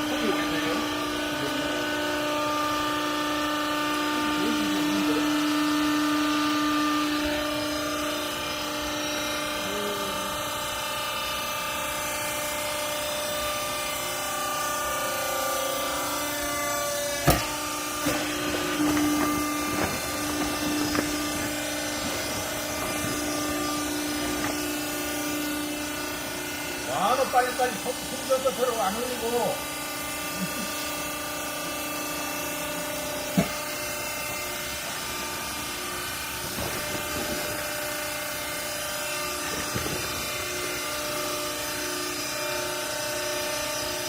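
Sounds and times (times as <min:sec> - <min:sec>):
hydraulic baler motor humming: 0:00.0 - 0:44.0
sharp knocks: 0:17.2 - 0:24.7.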